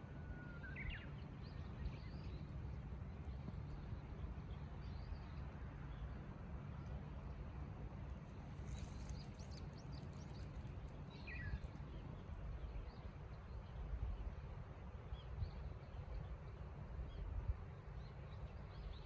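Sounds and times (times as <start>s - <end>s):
wind rumbling on microphone: 7.2s - 19.0s.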